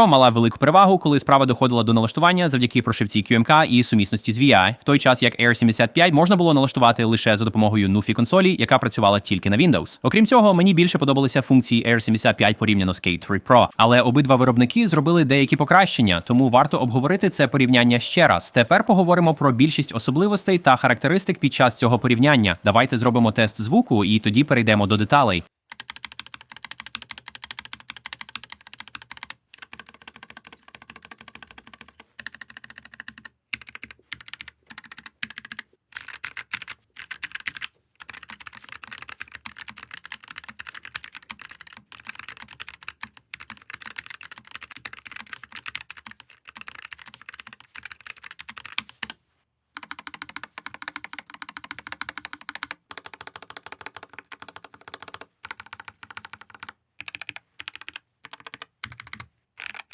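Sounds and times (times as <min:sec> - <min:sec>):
fast typing on mechanical keyboard: 0:25.7 - 0:49.2, 0:49.8 - 0:59.9.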